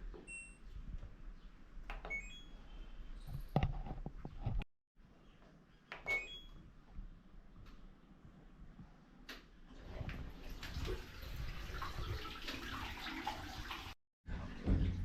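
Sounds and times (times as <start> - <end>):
washing machine panel beeps: 0.2 - 0.6, 1.9 - 2.7, 6.0 - 6.6.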